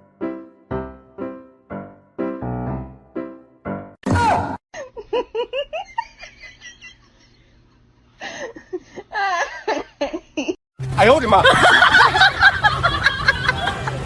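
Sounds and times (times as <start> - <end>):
person giggling: 4.8 - 7.5, 8.2 - 10.6.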